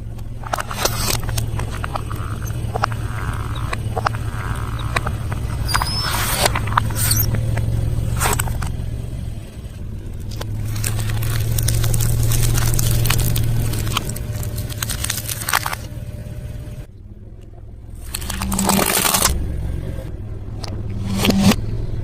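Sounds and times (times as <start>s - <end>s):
chewing and crunching food: 0.0s - 8.7s, 10.0s - 16.0s, 18.0s - 19.4s
sharp clicks and crackles: 0.0s - 9.1s, 9.9s - 16.0s, 17.4s - 19.4s
car interior hum: 0.0s - 22.0s.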